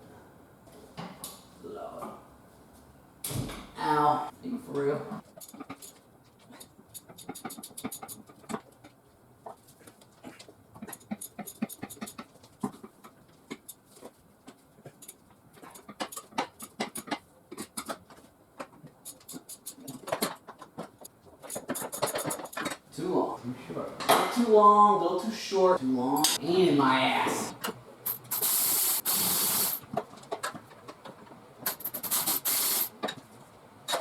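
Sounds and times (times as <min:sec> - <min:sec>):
hand tools clicking rapidly: 0:06.6 - 0:08.5, 0:10.9 - 0:12.3.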